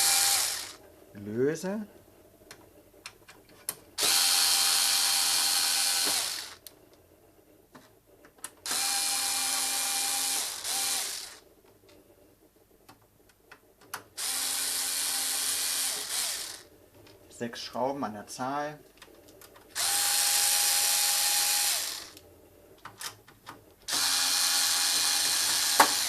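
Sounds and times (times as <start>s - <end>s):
cordless screwdriver running: 0.0s - 0.8s, 4.0s - 6.6s, 8.7s - 11.4s, 14.2s - 16.7s, 19.8s - 22.2s, 23.9s - 26.0s.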